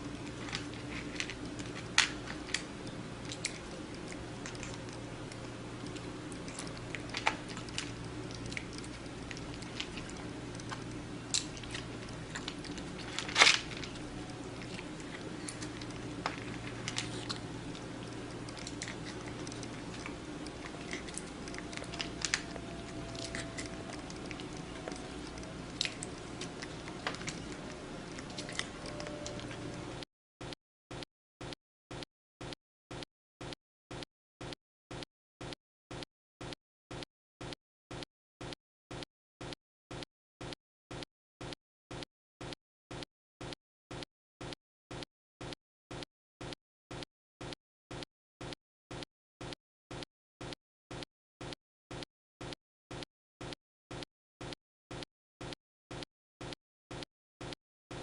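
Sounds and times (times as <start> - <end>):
cat crunching food: 0.0 - 30.0
low hum: 0.0 - 30.0.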